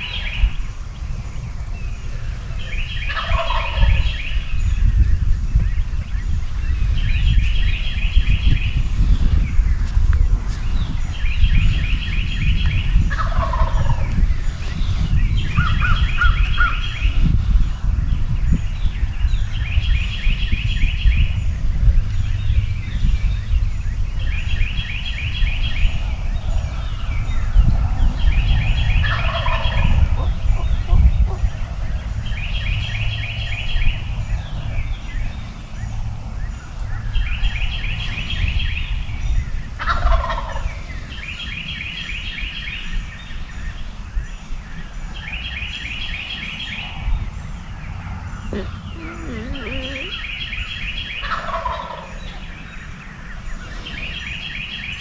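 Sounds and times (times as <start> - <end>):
turkey gobbling: 3.1 - 4.1, 13.1 - 14.0, 29.0 - 29.7, 39.8 - 40.6, 48.5 - 50.2, 51.2 - 52.4
songbird high trill: 48.5 - 51.0.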